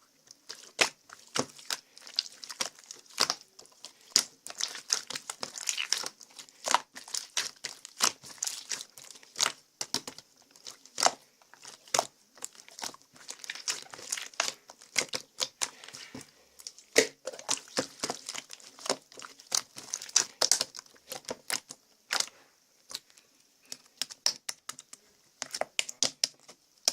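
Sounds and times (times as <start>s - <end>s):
crinkling and crackling: 0.0s - 26.9s.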